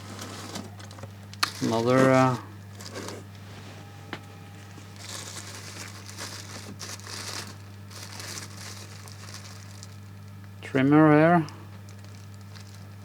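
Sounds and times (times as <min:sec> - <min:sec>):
packaging rustling: 0:00.0 - 0:03.7, 0:04.6 - 0:10.6, 0:11.7 - 0:13.0
low steady hum: 0:00.0 - 0:13.0.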